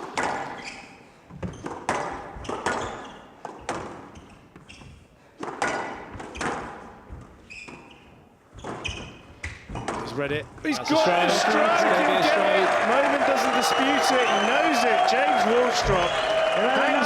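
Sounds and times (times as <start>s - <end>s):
shoe squeaks: 0.5s - 1.7s, 2.4s - 3.3s, 4.1s - 5.1s, 7.4s - 9.4s.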